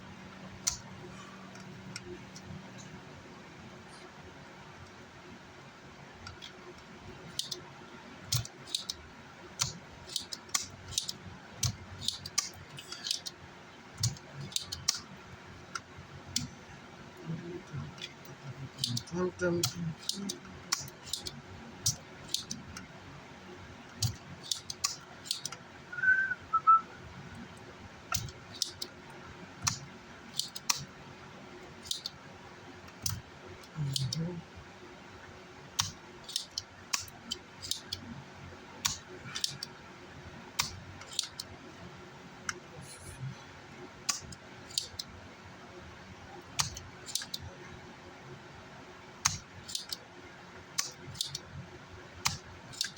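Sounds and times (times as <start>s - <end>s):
two-note high whistle: 25.9s - 27.0s.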